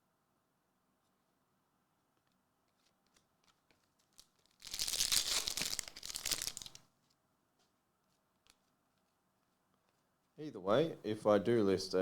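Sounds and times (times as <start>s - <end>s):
foil wrapper tearing and crinkling: 2.8s - 6.9s.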